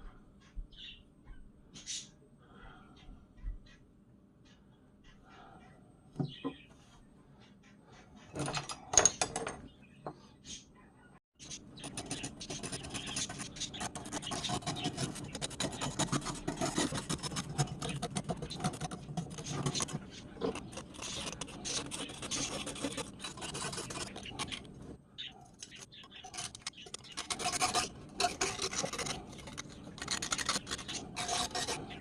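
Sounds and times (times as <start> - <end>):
pliers being scraped: 11.8 - 24.8, 25.5 - 32.0.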